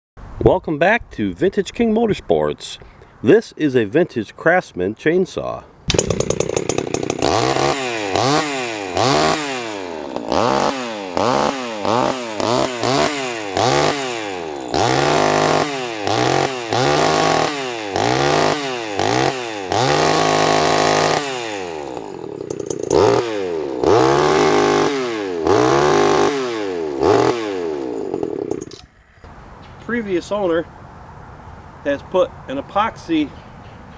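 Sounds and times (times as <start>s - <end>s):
chainsaw revving: 5.9s - 28.9s.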